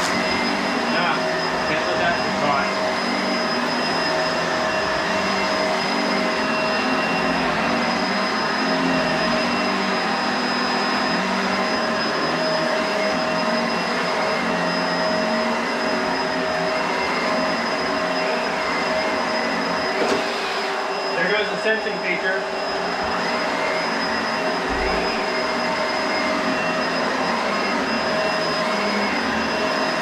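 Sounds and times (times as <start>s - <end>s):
upright vacuum running: 0.0s - 30.0s.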